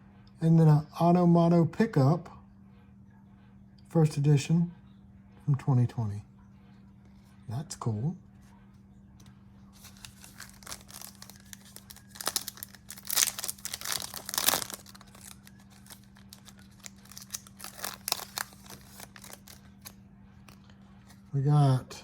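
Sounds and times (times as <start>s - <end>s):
foil pack tearing and crinkling: 9.8s - 20.0s.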